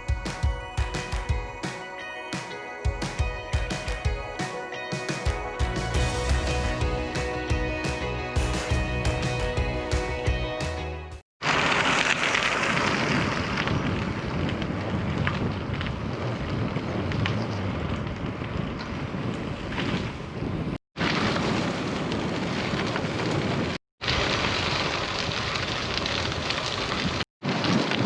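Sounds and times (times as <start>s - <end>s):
rushing wind on microphone: 11.5s - 28.0s.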